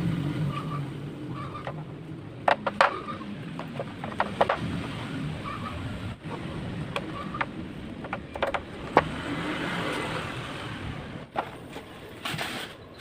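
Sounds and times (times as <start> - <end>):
steady background noise: 0.0 - 13.0
sharp clicks and knocks: 1.6 - 4.9, 6.8 - 9.2.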